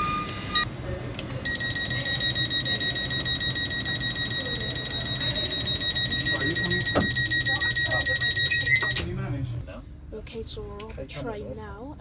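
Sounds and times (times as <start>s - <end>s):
high-pitched electronic beeper: 1.5s - 9.0s.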